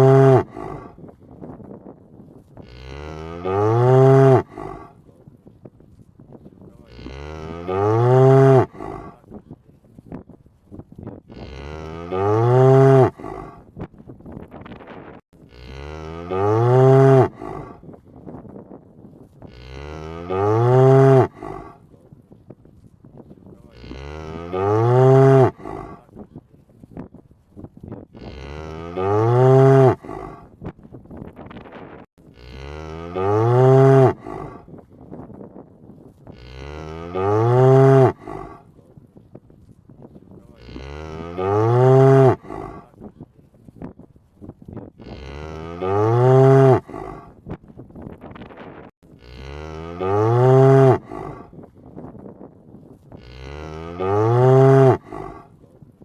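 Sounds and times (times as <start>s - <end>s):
cow mooing: 0.0s - 1.0s, 2.6s - 5.0s, 6.8s - 9.2s, 11.3s - 13.6s, 15.5s - 17.8s, 19.5s - 21.8s, 23.7s - 26.1s, 28.2s - 30.5s, 32.3s - 34.6s, 36.3s - 38.6s, 40.5s - 42.9s, 45.0s - 47.3s, 49.2s - 51.6s, 53.2s - 55.5s.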